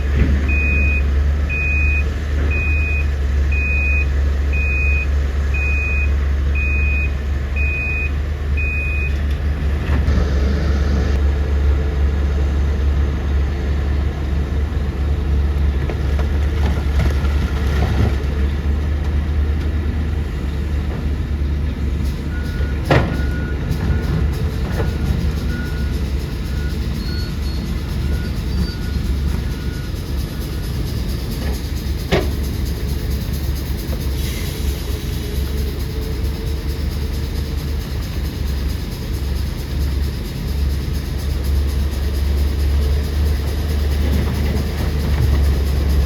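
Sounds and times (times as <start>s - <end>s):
diesel earthmoving machine droning: 0.0s - 46.0s
warning alarm beeps: 0.5s - 9.2s, 24.8s - 30.8s.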